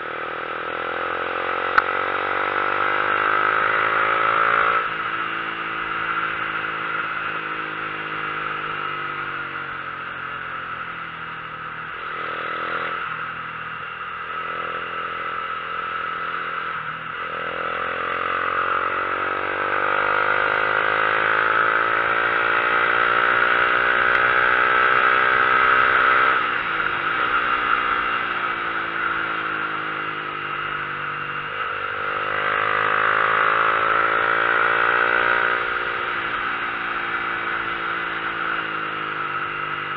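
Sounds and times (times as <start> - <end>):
road and wind noise: 0.0 - 39.9
vehicle engine revving: 11.9 - 39.9.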